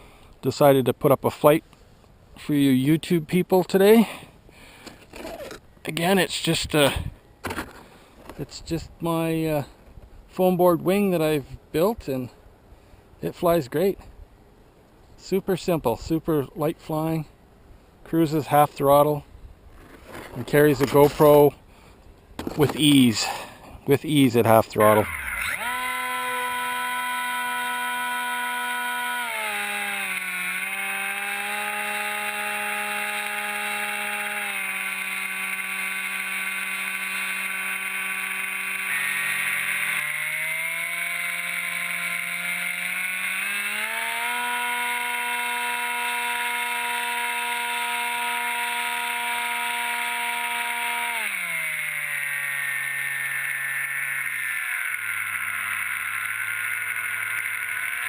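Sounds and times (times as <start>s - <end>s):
electric motor and propeller whine: 24.2s - 58.0s.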